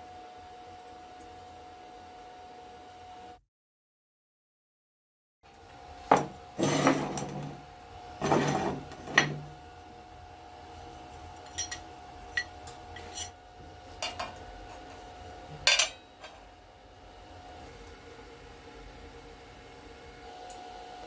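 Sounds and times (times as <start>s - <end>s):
metal scraping: 8.2s - 9.5s
metal clanks: 15.6s - 16.4s.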